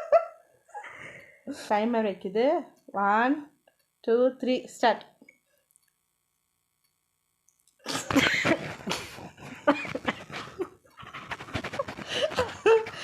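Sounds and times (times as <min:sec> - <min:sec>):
people giggling and laughing: 0:00.0 - 0:01.0, 0:07.9 - 0:13.0.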